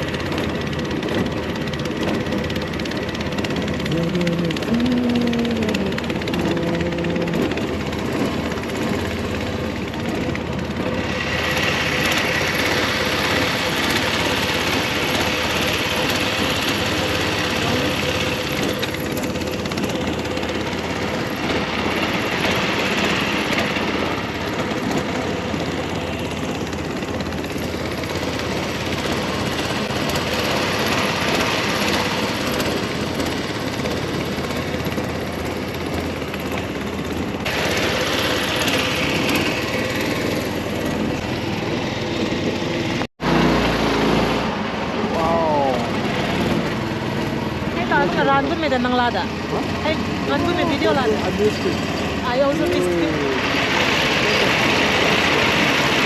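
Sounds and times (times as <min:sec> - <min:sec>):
motorboat engine running: 0:00.0 - 0:56.0
water hiss: 0:53.3 - 0:56.0.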